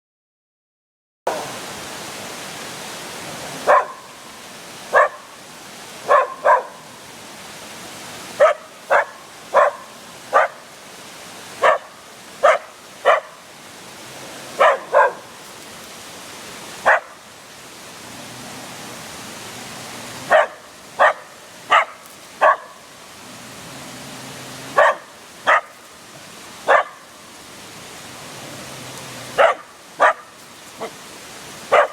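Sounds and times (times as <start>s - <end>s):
dog barking: 3.6s - 4.0s, 4.9s - 5.3s, 6.1s - 6.8s, 8.4s - 10.6s, 11.6s - 13.4s, 14.6s - 15.3s, 16.8s - 17.2s, 20.2s - 22.8s, 24.8s - 25.8s, 26.7s - 27.0s, 29.4s - 31.0s.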